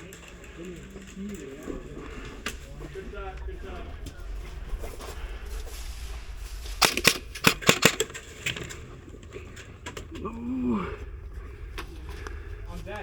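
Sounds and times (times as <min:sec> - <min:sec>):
low background rumble: 0:00.0 - 0:13.0
sharp clicks and knocks: 0:06.8 - 0:10.2.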